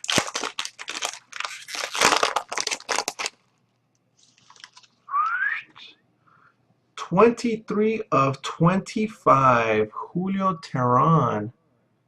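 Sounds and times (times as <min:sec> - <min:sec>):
wrapper tearing and crinkling: 0:00.0 - 0:03.6, 0:04.2 - 0:05.1.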